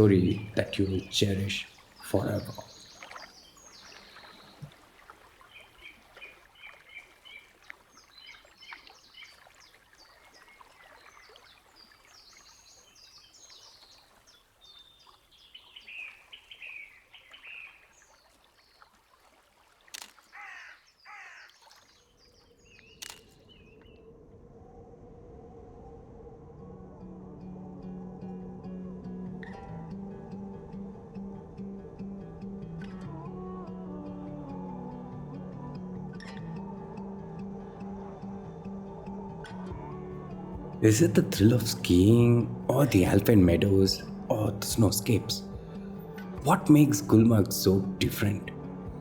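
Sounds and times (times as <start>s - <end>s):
birds chirping: 0.0s - 18.9s, 20.2s - 24.2s, 39.9s - 49.0s
faint outdoor background noise: 0.0s - 49.0s
harsh caws: 20.3s - 21.6s.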